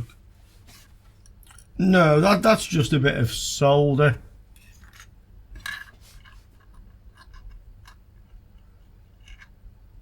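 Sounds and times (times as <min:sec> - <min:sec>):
low steady hum: 0:00.0 - 0:10.0.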